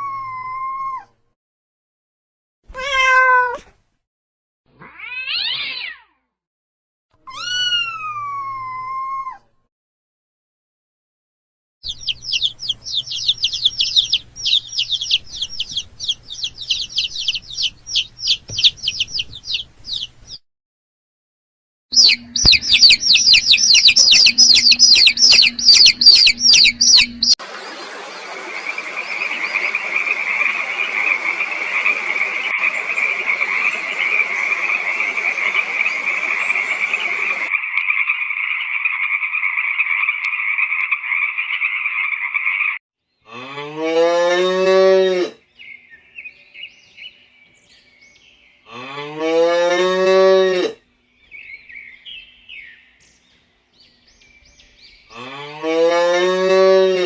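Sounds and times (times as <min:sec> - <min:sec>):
chorus of animal calls: 0:22.0 - 0:47.2, 0:55.0 - 0:57.0
cow mooing: 0:43.3 - 0:45.4, 0:48.7 - 0:50.8, 0:55.1 - 0:57.0.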